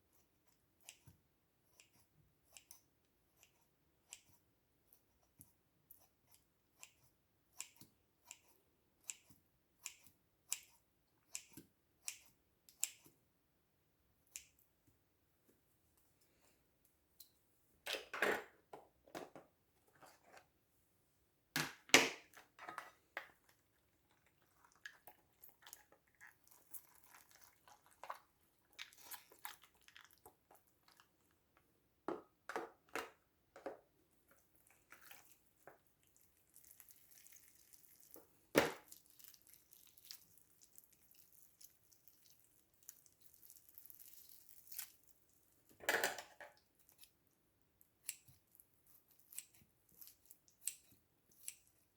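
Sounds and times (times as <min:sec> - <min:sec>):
containers and utensils tapping: 0:21.6 - 0:23.6.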